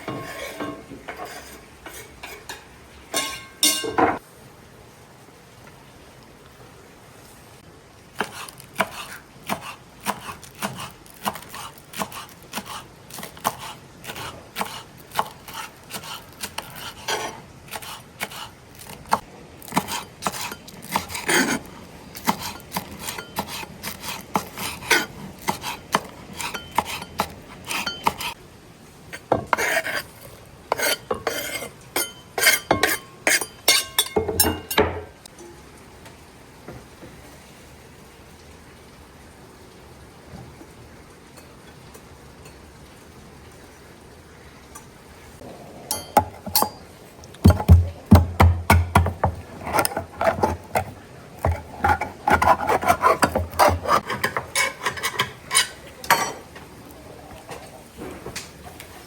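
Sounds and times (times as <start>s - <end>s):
utensils clinking against dishes: 0.0s - 4.2s, 19.1s - 28.4s, 30.7s - 35.5s, 45.9s - 46.9s, 47.5s - 56.5s.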